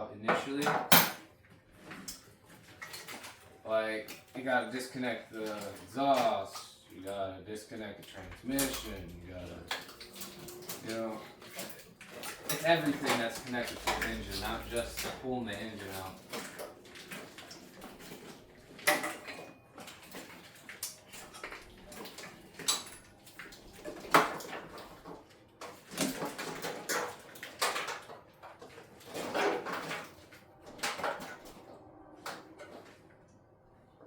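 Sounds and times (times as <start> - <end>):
hand tools and metal parts clinking: 8.1 - 28.1.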